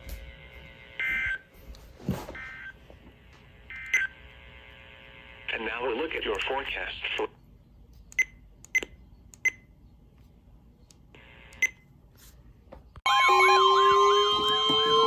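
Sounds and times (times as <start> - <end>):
steady alarm tones: 13.0 - 15.0
wailing siren: 13.0 - 15.0.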